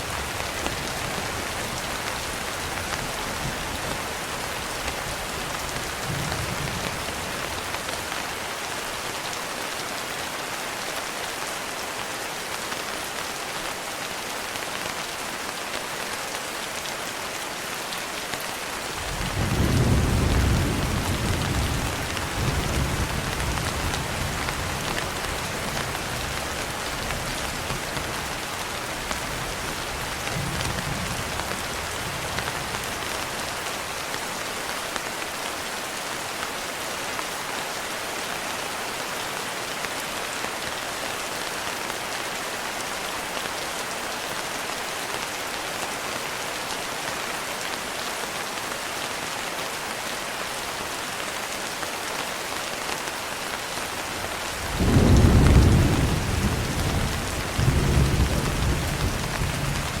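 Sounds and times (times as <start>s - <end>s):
steady rain falling: 0.0s - 60.0s
thunder rumbling: 54.6s - 60.0s.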